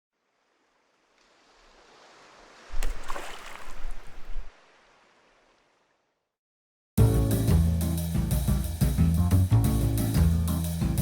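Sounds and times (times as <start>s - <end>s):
wind: 0.1s - 6.2s
water: 0.1s - 6.3s
sharp splashes: 0.2s - 6.0s.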